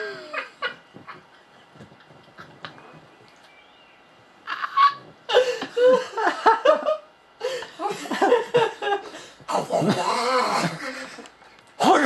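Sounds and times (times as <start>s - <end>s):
hearty human laughter: 0.0s - 2.8s, 4.4s - 11.3s.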